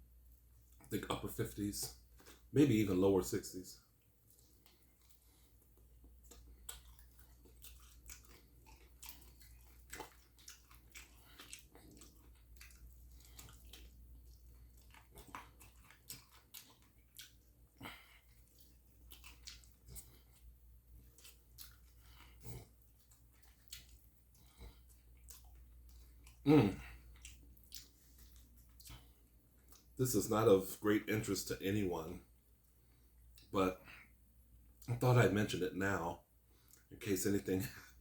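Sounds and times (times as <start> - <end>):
chewing and mouth sounds: 3.9 - 30.0, 36.5 - 37.0.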